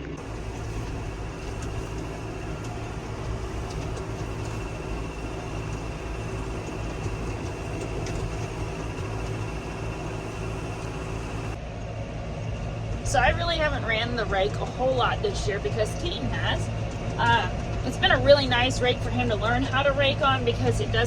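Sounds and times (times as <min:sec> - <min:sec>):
tractor engine hum: 0:00.0 - 0:21.0
faint ticks and rattles: 0:00.1 - 0:11.6.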